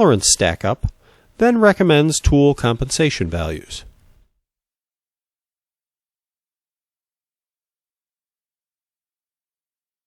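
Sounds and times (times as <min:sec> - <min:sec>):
faint digital hiss: 0:00.4 - 0:04.3.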